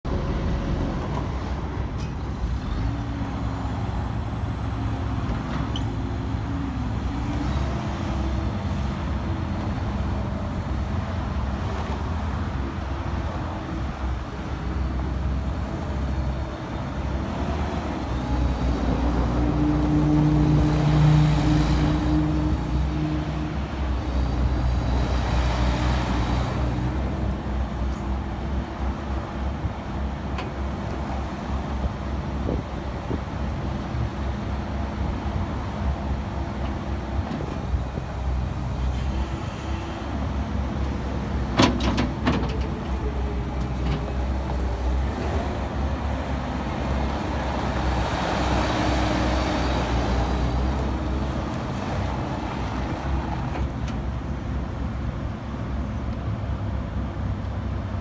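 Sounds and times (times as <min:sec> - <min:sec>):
skid steer diesel engine: 0:00.1 - 0:58.0.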